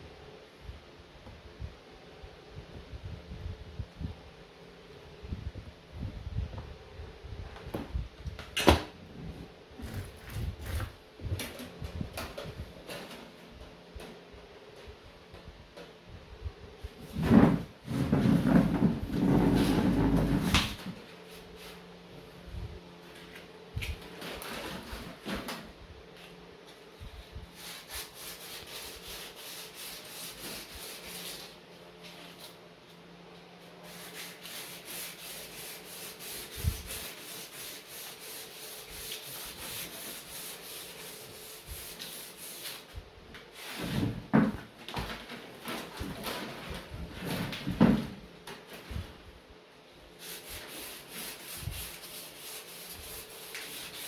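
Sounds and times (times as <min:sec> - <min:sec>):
rapid rubbing strokes: 0:27.6 - 0:31.6, 0:33.8 - 0:42.9, 0:50.2 - 0:54.0.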